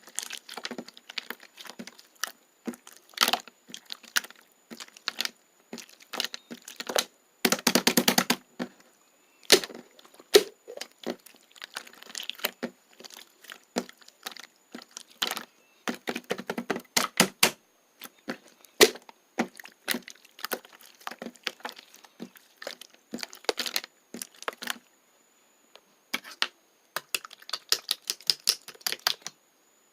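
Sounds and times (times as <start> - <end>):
slime clicking and popping: 0.1 - 8.4, 27.0 - 29.3.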